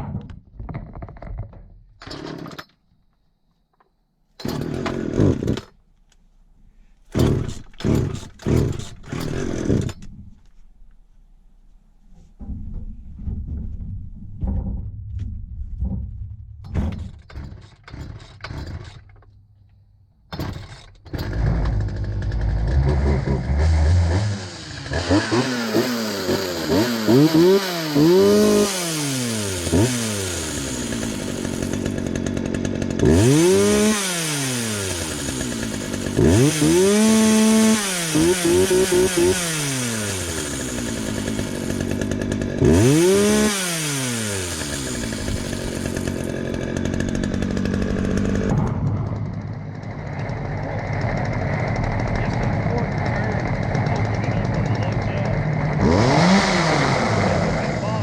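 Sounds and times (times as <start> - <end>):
knocks and rattles: 0.0 - 3.0, 7.1 - 10.6, 12.1 - 19.5, 20.3 - 23.6
chainsaw engine idling and revving: 4.4 - 5.8, 7.1 - 10.1, 17.4 - 19.2, 20.4 - 58.0.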